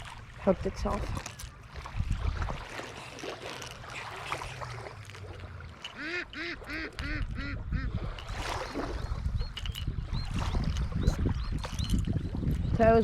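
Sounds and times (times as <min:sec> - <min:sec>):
waterfowl calling: 0:05.8 - 0:09.0.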